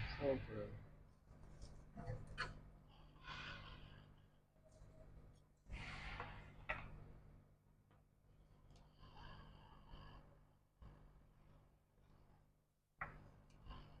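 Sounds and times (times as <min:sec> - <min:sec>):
steady low hum: 0:00.0 - 0:13.0
quiet breathing: 0:02.8 - 0:14.0.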